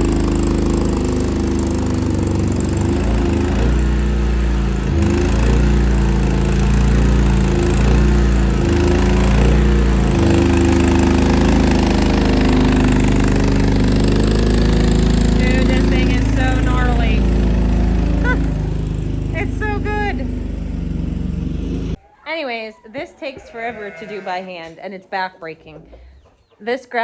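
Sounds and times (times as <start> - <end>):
skid steer engine running: 0.0 - 22.0.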